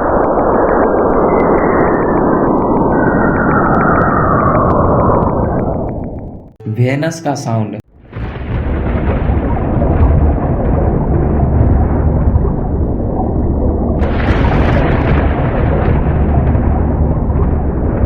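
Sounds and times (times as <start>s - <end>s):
deep rumbling roar of noise: 7.9s - 18.0s.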